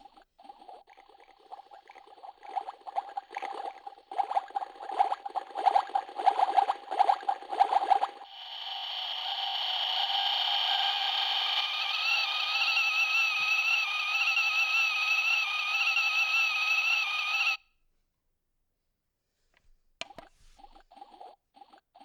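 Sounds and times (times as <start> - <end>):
rapid pulsing: 0.0 - 17.6
toy kettle whistle: 7.0 - 17.6.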